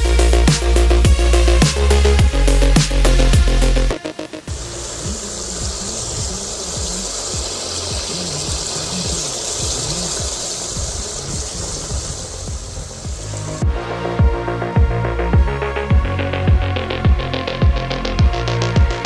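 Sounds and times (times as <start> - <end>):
running water rushing: 4.5 - 13.6.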